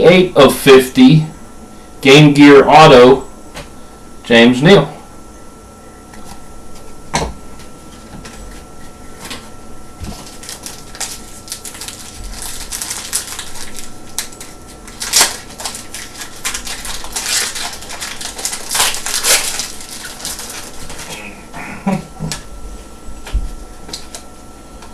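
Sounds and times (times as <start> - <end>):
faint steady whine: 0.0 - 24.9
wrappers crinkling and tearing: 10.0 - 21.3.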